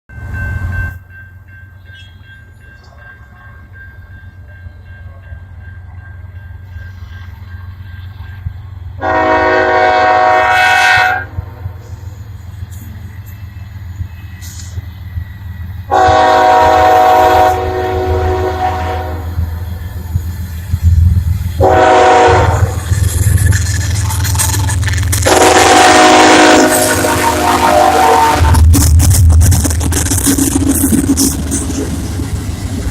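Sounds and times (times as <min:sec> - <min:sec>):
diesel locomotive engines rumbling: 0:00.1 - 0:32.9
train air horn blasts: 0:09.0 - 0:11.7, 0:15.9 - 0:19.4, 0:21.6 - 0:22.8, 0:25.2 - 0:28.7.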